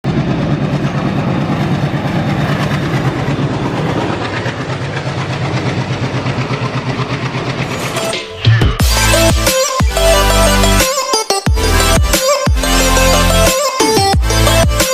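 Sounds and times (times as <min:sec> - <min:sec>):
diesel locomotive drone: 0:00.0 - 0:14.9
train wheels clattering over rail joints: 0:00.1 - 0:08.1
loud music: 0:07.6 - 0:14.9.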